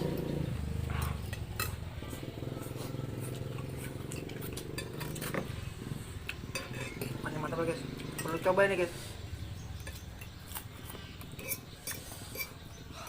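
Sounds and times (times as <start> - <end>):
cutlery clinking on a plate: 4.0 - 5.6, 6.3 - 7.2, 9.8 - 12.7.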